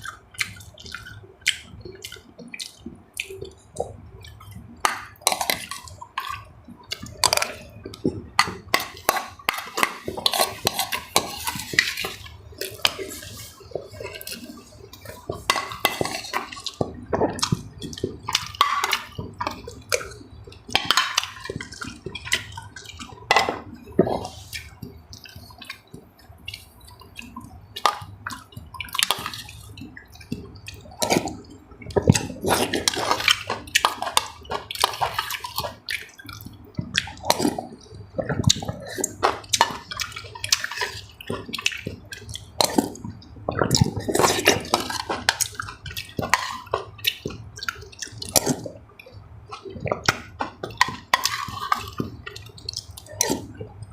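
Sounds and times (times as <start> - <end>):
slurping and chewing: 0.0 - 53.9.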